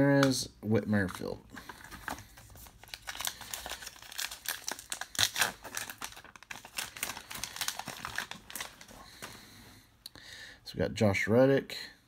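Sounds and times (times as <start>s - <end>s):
wrapper crinkling and tearing: 1.0s - 9.3s.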